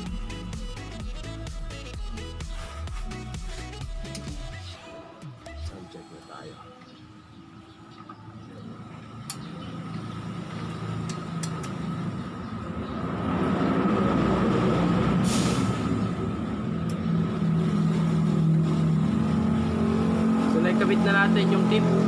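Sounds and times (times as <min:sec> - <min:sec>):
vehicle engine running: 0:08.2 - 0:22.0.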